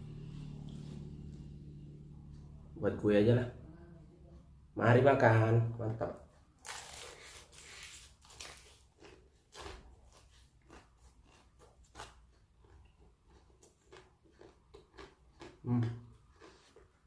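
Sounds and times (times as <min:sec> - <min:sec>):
chewing crispy chicken crunches: 0:06.6 - 0:17.0.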